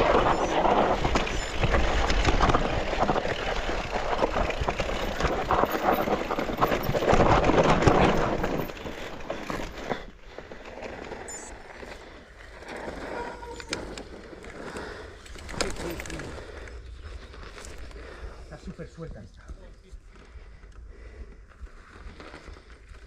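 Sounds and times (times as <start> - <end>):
wind noise: 0.0 - 9.6
bike frame rattling: 0.0 - 18.2
bike tyres crunching on dirt: 0.0 - 23.0.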